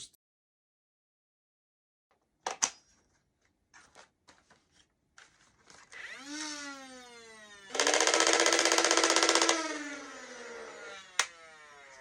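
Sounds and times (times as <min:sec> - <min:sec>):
small electric motor whining: 0:05.9 - 0:12.0.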